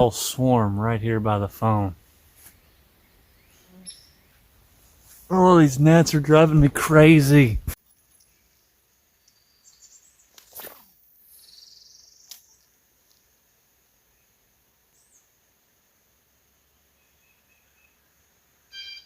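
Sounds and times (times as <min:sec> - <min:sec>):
faint high chirps: 0:03.3 - 0:04.4, 0:18.7 - 0:19.0
fishing rod swish: 0:10.4 - 0:11.0.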